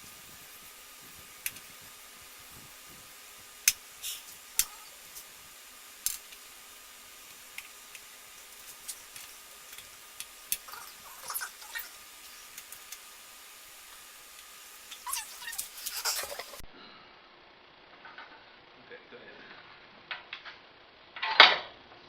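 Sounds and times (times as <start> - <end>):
small hard parts clicking together: 6.0 - 6.5, 7.3 - 13.1.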